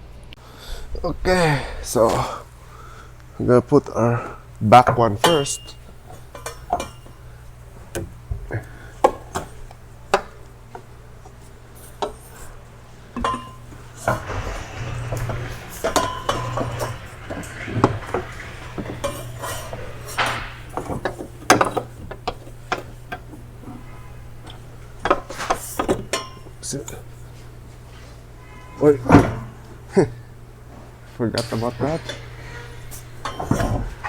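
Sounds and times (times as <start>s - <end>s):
steady low hum: 0.0s - 34.0s
metal rattling and scraping: 0.8s - 34.0s
metal tools clinking and knocking: 4.8s - 7.4s, 24.4s - 26.7s.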